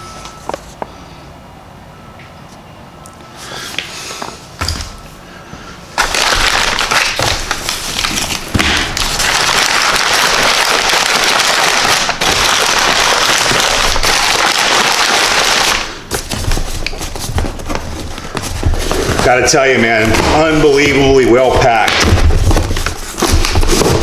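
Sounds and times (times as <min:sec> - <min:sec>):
packing material crinkling: 0:06.0 - 0:24.0.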